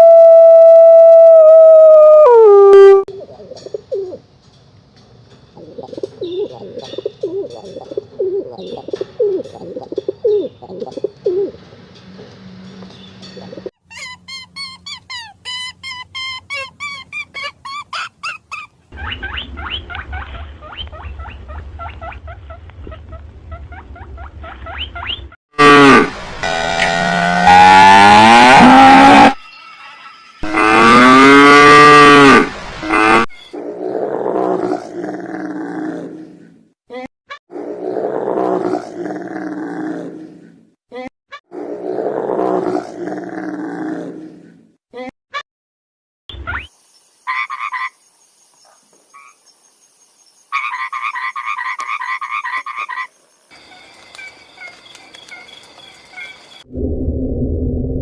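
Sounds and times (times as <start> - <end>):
cow mooing: 25.6 - 29.4, 30.4 - 33.2
rough animal call: 25.6 - 29.4, 30.4 - 36.4.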